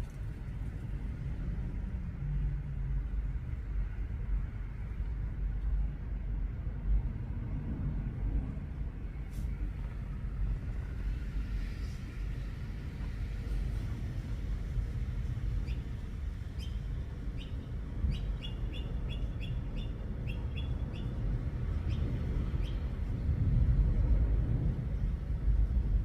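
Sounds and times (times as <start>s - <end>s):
bird chirping: 15.6s - 15.9s, 16.6s - 21.2s, 21.8s - 22.8s.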